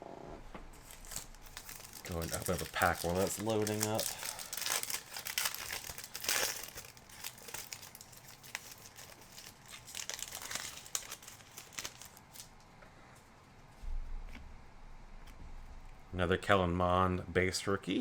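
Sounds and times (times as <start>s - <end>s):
plastic wrapper tearing and crinkling: 0.8s - 12.6s.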